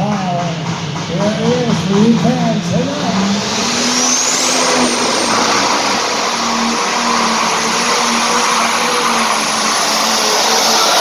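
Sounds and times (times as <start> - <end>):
high turbo whine: 0.0 - 11.0
tractor engine at full power: 0.0 - 11.0.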